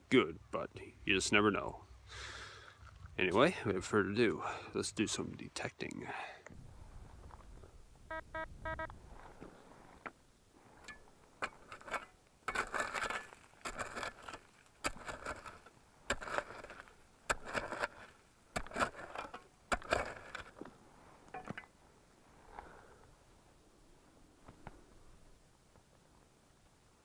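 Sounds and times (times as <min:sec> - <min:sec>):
short electronic beeps: 0:08.1 - 0:08.9.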